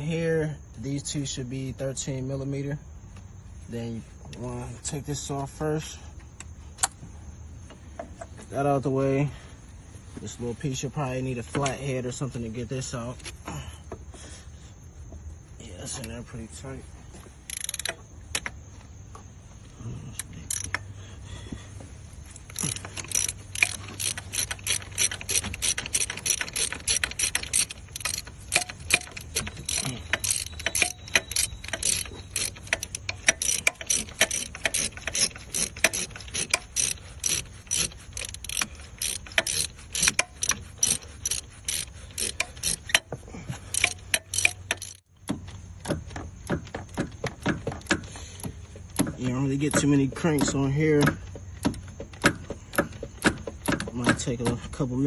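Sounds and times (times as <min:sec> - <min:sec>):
ratchet clicking: 0:17.4 - 0:18.6, 0:20.2 - 0:21.0, 0:22.2 - 0:45.1, 0:47.4 - 0:54.7.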